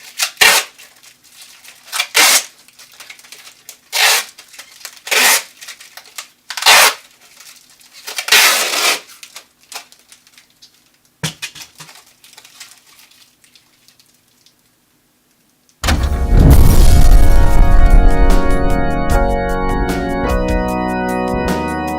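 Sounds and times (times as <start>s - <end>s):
tape pulled off a roll: 0.0s - 1.0s, 1.9s - 7.2s, 7.9s - 10.6s.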